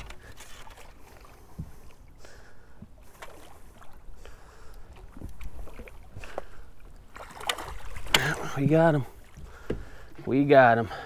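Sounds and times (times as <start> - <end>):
faint water noise: 0.0 - 11.0
light knocks on boat: 1.5 - 1.8, 7.4 - 10.4.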